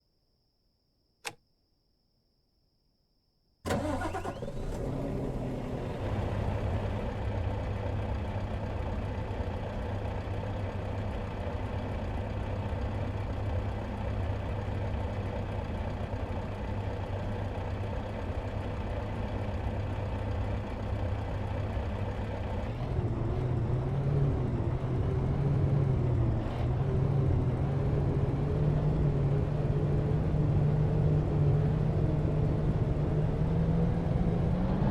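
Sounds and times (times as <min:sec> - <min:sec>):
click: 0:01.2 - 0:01.5
diesel engine starting and idling: 0:03.7 - 0:22.8.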